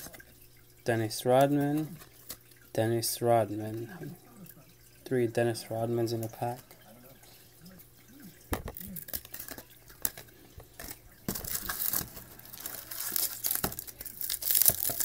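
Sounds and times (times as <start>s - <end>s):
cards clicking and rustling: 8.6s - 15.0s
wrapper crinkling and tearing: 8.8s - 15.0s.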